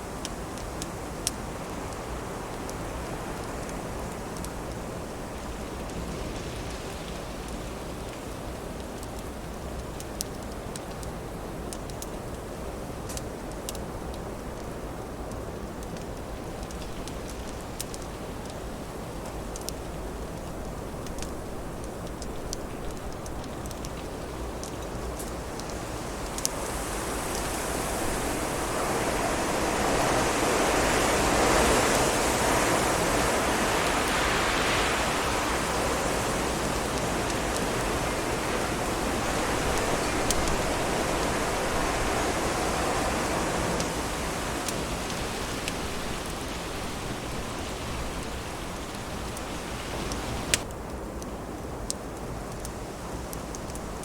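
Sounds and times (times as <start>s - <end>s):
burning wood crackling: 0.0s - 54.0s
wind gust rushing: 25.4s - 50.6s.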